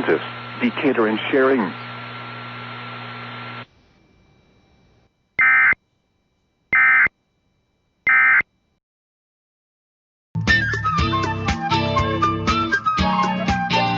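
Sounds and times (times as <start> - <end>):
broadcast hiss with hum: 0.0 - 7.1
two-tone digital data bursts: 5.4 - 5.8, 6.8 - 7.1, 8.1 - 8.4.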